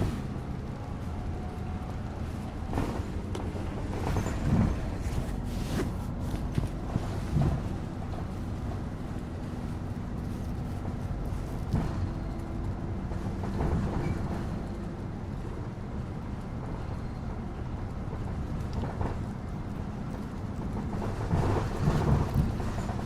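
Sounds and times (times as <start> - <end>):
bus engine hum: 0.0 - 23.0
road rumble: 0.0 - 23.0
rattles and bumps: 2.2 - 14.7.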